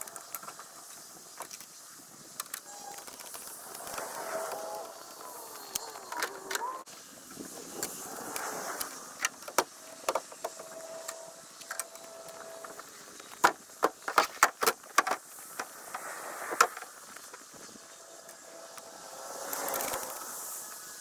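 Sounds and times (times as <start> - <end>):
sharp clicks and metallic knocks: 9.2 - 15.8.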